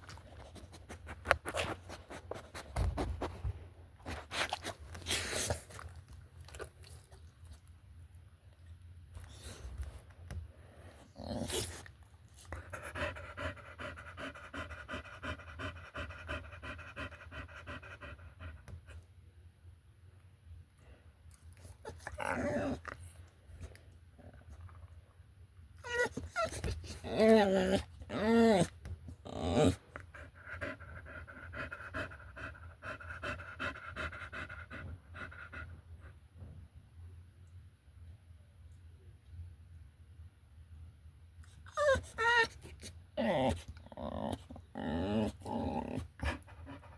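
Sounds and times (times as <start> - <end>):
dog panting: 12.5 - 19.0, 30.0 - 36.1, 46.2 - 46.9.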